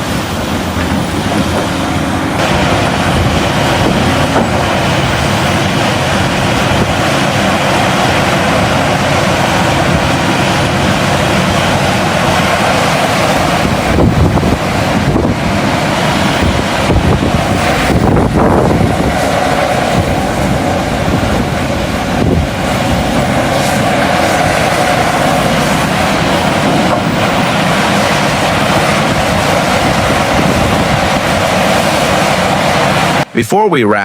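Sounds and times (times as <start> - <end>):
heavy machinery running: 0.0 - 33.3
wind on microphone: 0.0 - 33.3.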